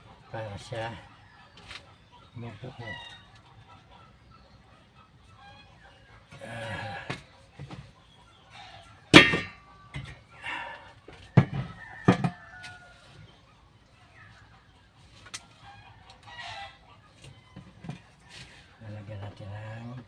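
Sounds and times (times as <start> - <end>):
chickens clucking and crowing: 0.0 - 20.0
sharp knocks: 9.2 - 9.6.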